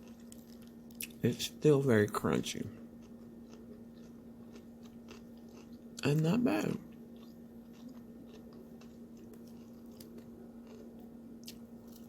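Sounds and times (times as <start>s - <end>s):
person chewing crunchy salad: 0.0s - 1.2s, 2.7s - 12.0s.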